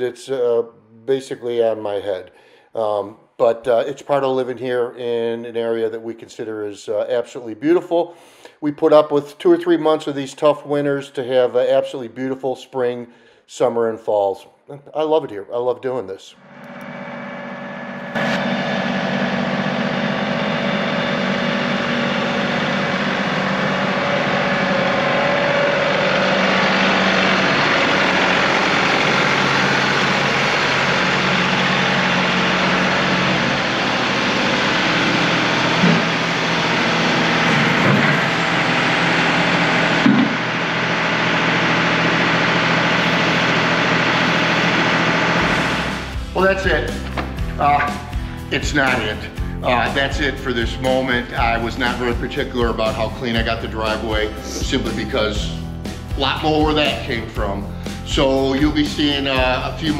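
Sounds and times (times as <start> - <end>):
tractor diesel engine running: 16.5 - 59.9.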